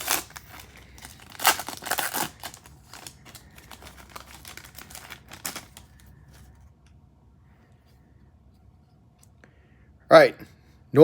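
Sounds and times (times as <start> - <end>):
wrapper tearing and crinkling: 0.0 - 6.1.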